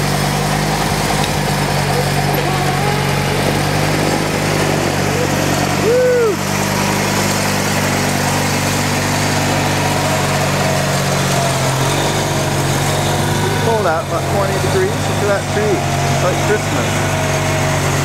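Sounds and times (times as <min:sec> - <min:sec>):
small gas engine running: 0:00.0 - 0:18.0
rising and falling tone: 0:00.6 - 0:13.8.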